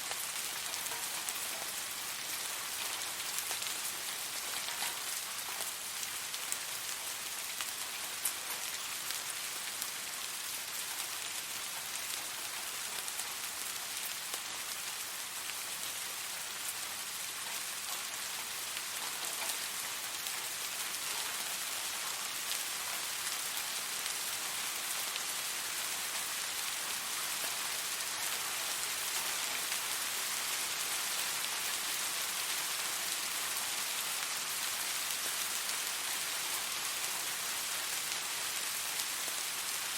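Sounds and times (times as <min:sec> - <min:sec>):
steady rain falling: 0:00.0 - 0:39.9
raindrop ticks: 0:02.8 - 0:05.8, 0:17.4 - 0:21.4.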